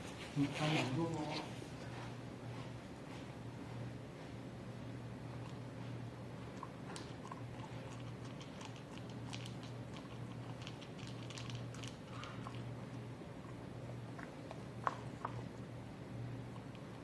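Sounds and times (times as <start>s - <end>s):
steady low hum: 0.0s - 17.0s
dog chewing: 5.2s - 17.0s.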